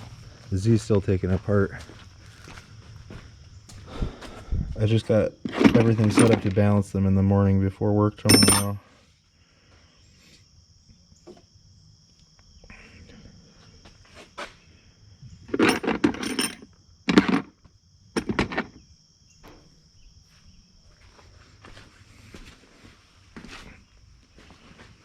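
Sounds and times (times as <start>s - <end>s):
metal hand tools clattering: 5.5s - 6.6s, 8.3s - 8.8s, 15.5s - 17.5s.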